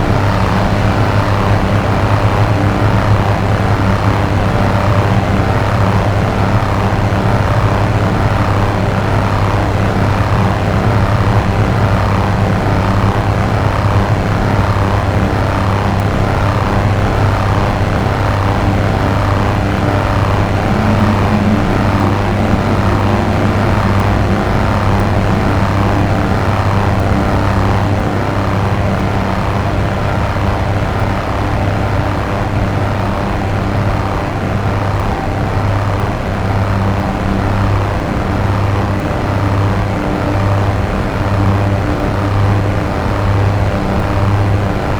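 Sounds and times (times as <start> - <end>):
noisy swirling sweep: 0.0 - 30.8
low synthesizer drone: 0.0 - 44.9.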